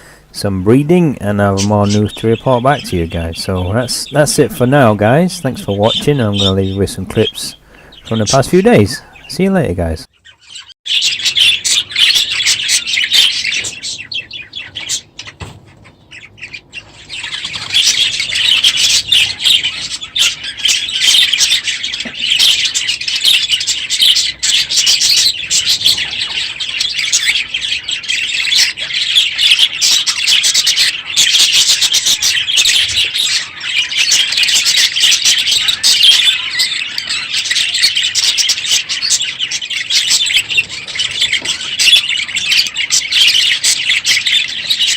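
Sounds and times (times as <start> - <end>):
budgerigars chattering: 0.0 - 44.9.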